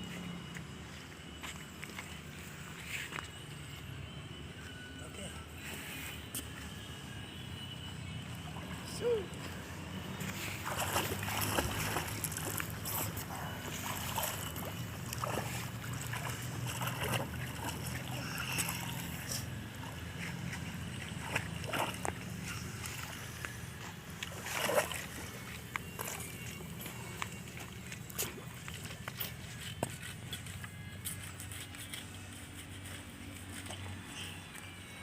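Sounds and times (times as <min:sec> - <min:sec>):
steady low hum: 0:00.0 - 0:35.0
water splashing in a pool: 0:10.5 - 0:29.2.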